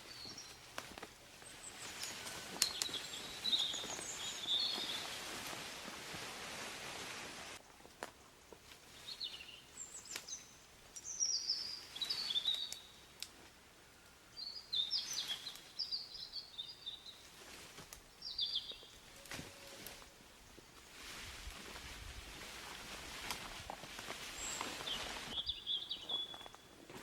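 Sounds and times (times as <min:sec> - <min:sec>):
songbird chirping: 0:00.0 - 0:05.8, 0:07.6 - 0:22.1, 0:23.9 - 0:26.9
quiet outdoor background noise: 0:00.0 - 0:27.0
faint sharp clicks: 0:10.1 - 0:11.1, 0:12.5 - 0:13.4.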